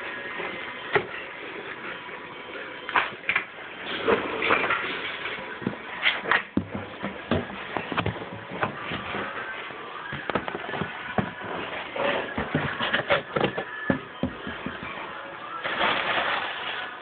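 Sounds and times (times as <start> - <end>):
scraping: 3.9 - 17.0
objects knocking and clunking: 4.0 - 16.4.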